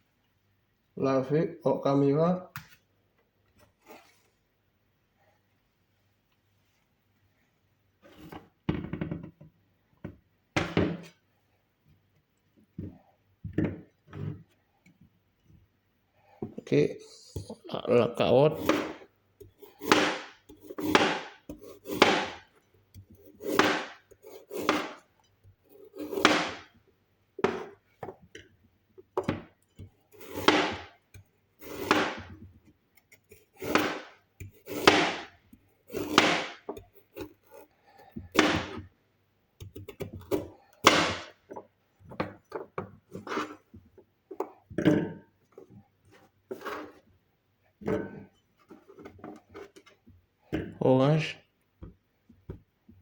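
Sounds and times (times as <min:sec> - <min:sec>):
knife slicing carrot: 0:18.5 - 0:26.7, 0:30.1 - 0:30.9, 0:31.6 - 0:32.3, 0:33.0 - 0:38.8.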